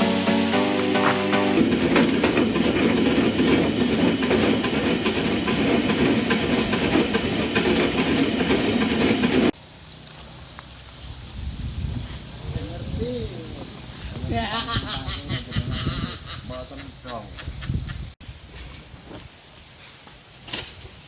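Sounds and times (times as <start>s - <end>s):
conveyor machine rattling: 1.6s - 9.6s.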